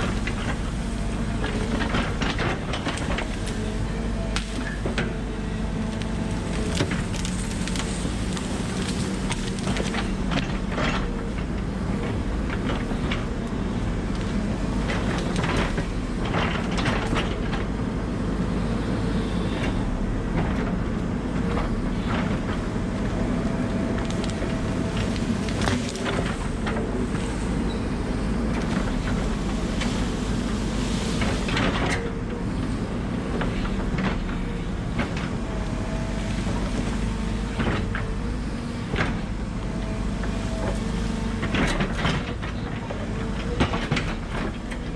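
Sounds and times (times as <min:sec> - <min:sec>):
excavator diesel engine running: 0:00.0 - 0:44.9
sharp cracks and knocks: 0:04.3 - 0:05.2, 0:05.9 - 0:11.1, 0:23.9 - 0:26.9.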